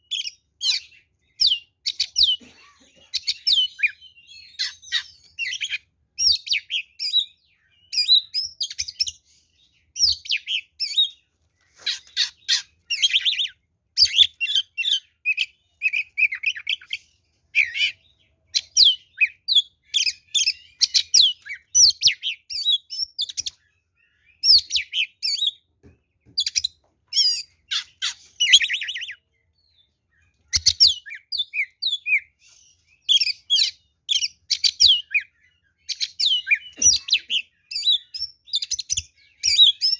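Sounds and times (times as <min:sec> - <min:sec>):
bird singing whistles and chatter: 0:30.5 - 0:39.9.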